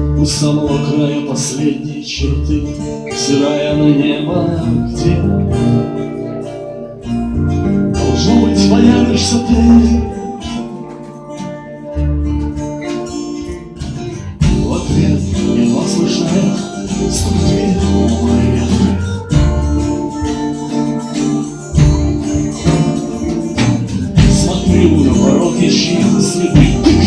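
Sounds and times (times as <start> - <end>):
band playing guitar instrumental: 0.0 - 27.0
sharp drum hits: 21.8 - 25.0.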